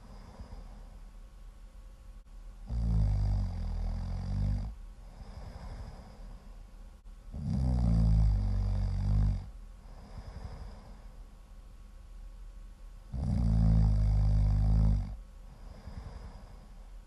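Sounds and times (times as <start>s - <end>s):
quiet breathing: 0.0s - 1.4s, 2.2s - 11.7s, 13.0s - 17.0s
loud low-pitched snoring: 2.7s - 6.2s, 7.3s - 10.9s, 13.1s - 16.6s.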